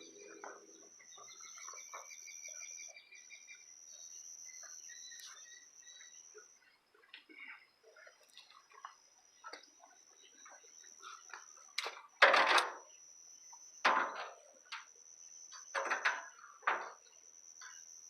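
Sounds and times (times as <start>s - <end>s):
steady high-pitched tone: 0.0s - 6.3s.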